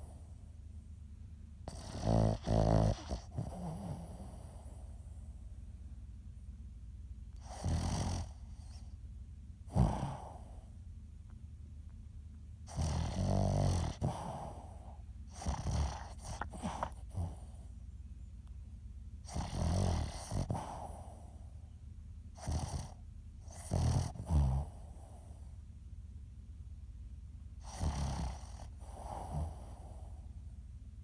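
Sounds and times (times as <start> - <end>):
dog snoring: 0.0 - 0.4, 1.6 - 5.4, 7.4 - 9.0, 9.6 - 10.7, 12.6 - 17.7, 19.2 - 21.5, 22.3 - 25.6, 27.6 - 30.3.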